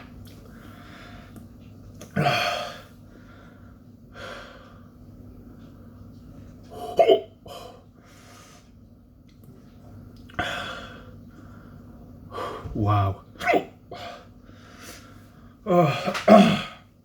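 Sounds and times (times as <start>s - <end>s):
man hiccuping: 6.8s - 7.3s, 12.8s - 13.8s.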